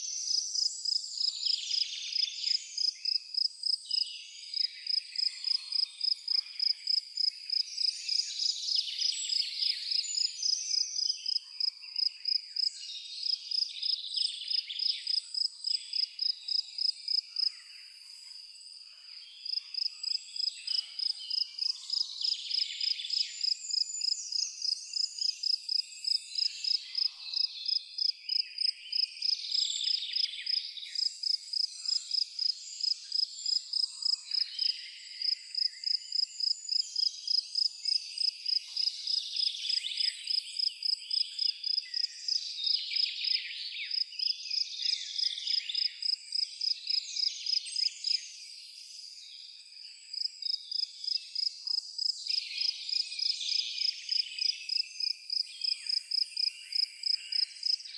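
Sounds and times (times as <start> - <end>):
birds singing: 0.0 - 18.2
crickets chirping: 0.2 - 4.0, 10.2 - 18.8, 19.4 - 48.2, 49.7 - 57.8.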